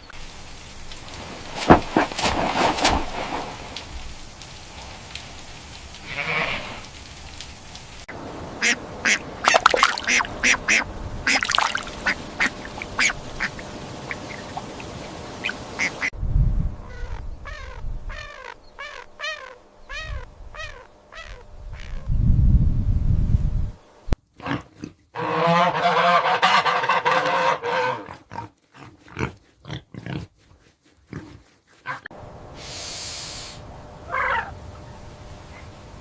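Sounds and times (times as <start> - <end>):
ducks quacking: 8.6 - 14.8, 15.4 - 16.1, 25.2 - 28.2
low rumble: 16.2 - 18.3.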